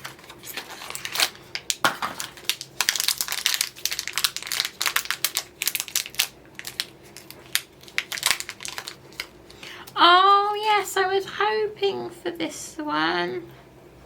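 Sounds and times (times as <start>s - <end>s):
packaging crinkling and crackling: 0.0s - 10.0s.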